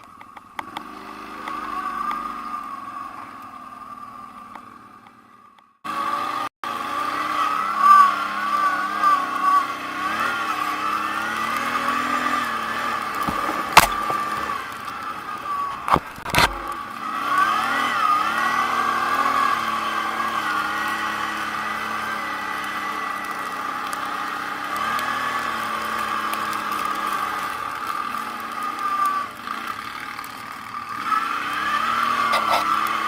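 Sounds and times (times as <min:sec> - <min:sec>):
atv engine revving: 0:00.0 - 0:33.0
sharp knocks: 0:13.2 - 0:14.5.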